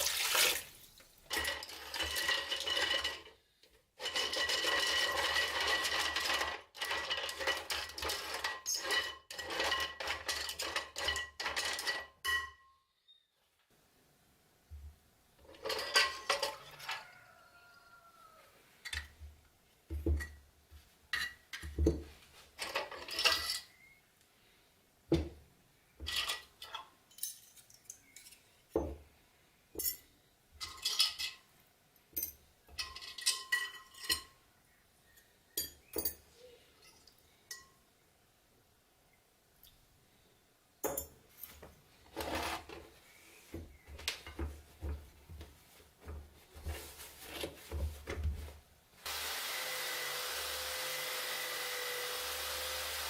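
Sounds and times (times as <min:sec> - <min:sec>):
metal parts and tools clinking: 0:01.3 - 0:03.4, 0:04.0 - 0:12.6, 0:15.5 - 0:17.0, 0:22.6 - 0:23.8, 0:26.0 - 0:28.6, 0:29.8 - 0:34.4.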